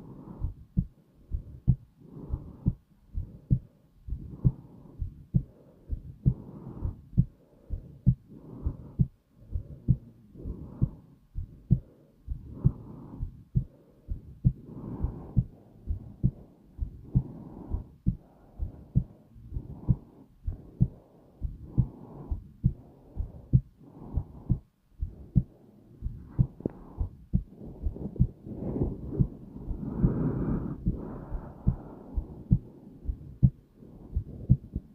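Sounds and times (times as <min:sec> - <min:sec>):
heartbeat thumping: 0:00.0 - 0:34.9
soft rushing noise: 0:25.3 - 0:34.8.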